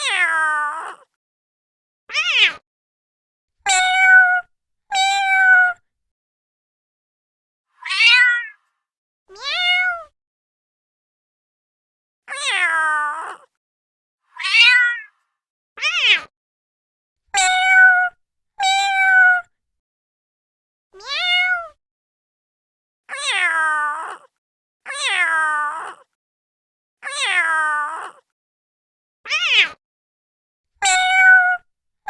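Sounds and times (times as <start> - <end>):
cat meowing: 0.0 - 1.1, 2.1 - 2.6, 3.7 - 5.8, 7.8 - 8.6, 9.3 - 10.2, 12.3 - 13.5, 14.3 - 15.1, 15.8 - 16.3, 17.4 - 19.5, 21.0 - 21.8, 23.1 - 24.3, 24.9 - 26.1, 27.0 - 28.2, 29.3 - 29.8, 30.8 - 31.6.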